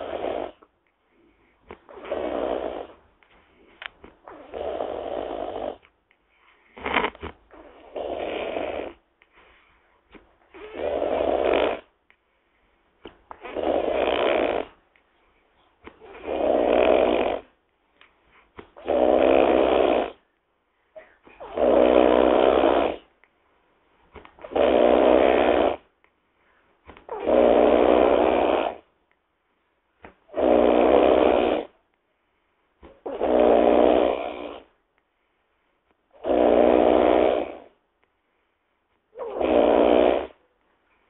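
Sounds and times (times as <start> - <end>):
loud snoring: 0.0 - 0.7, 1.8 - 3.0, 4.2 - 5.9, 6.8 - 9.0, 10.5 - 11.9, 13.4 - 14.8, 16.0 - 17.6, 18.8 - 20.2, 21.4 - 23.1, 24.4 - 25.9, 27.1 - 28.9, 30.3 - 31.8, 33.0 - 34.7, 36.1 - 37.8, 39.2 - 40.4
quiet breaths: 0.0 - 41.0.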